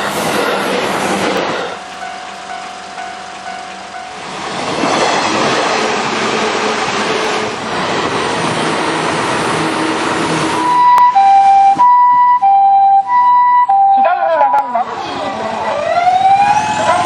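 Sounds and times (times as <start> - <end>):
train wheels rumbling on rails: 0.0 - 11.8.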